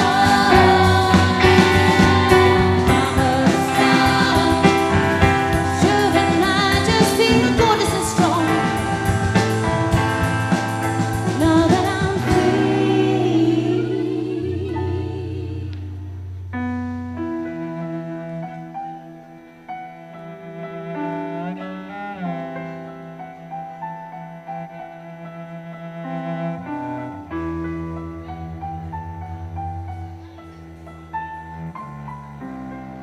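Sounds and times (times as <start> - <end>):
person singing: 0.0 - 10.2, 11.1 - 16.2
live folk band music: 0.0 - 17.6
drums: 0.0 - 17.7.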